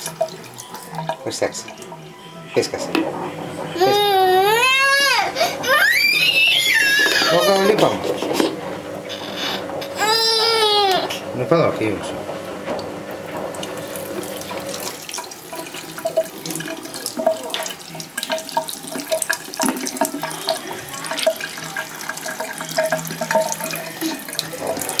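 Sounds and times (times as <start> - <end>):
tap water running into sink: 0.0 - 25.0
splashing of hands washing: 11.9 - 25.0.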